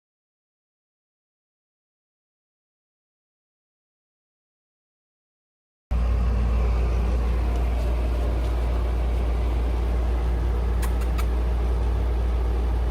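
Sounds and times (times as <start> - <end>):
electric pump humming: 5.9 - 12.9
faint clicks: 10.8 - 11.4.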